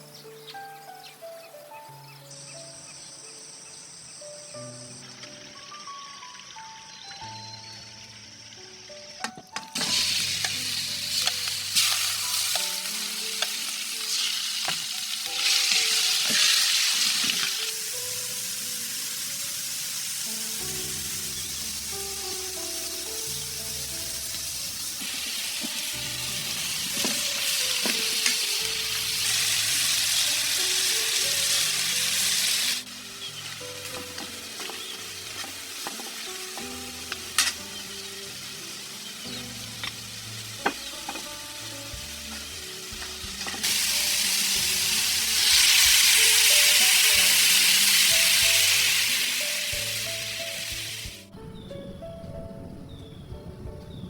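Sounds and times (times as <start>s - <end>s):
food sizzling in hot oil: 9.7s - 51.3s.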